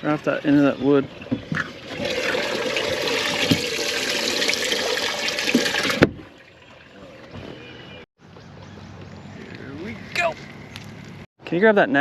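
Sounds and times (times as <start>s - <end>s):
rushing splashing water: 1.8s - 6.9s.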